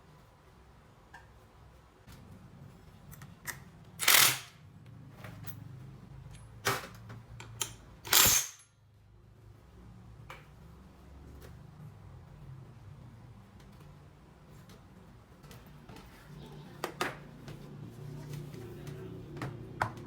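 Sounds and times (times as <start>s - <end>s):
tools and engine parts clicking: 3.1s - 4.6s, 6.2s - 8.8s.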